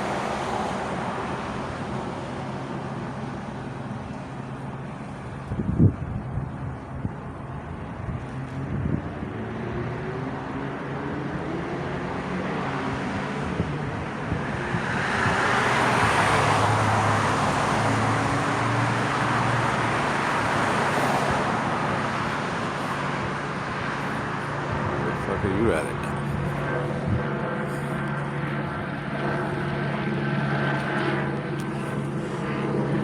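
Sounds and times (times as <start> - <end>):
traffic engine hum: 0.0 - 33.0
vehicle passing: 8.1 - 33.0.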